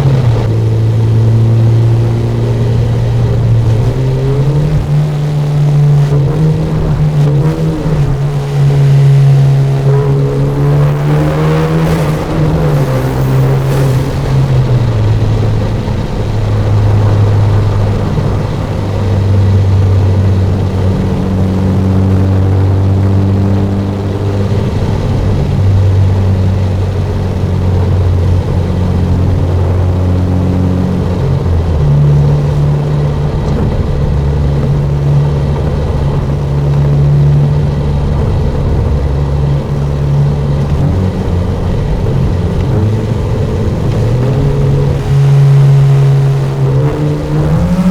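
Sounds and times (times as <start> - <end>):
airy rush: 0.0 - 22.4
car engine and exhaust drone: 0.0 - 47.9.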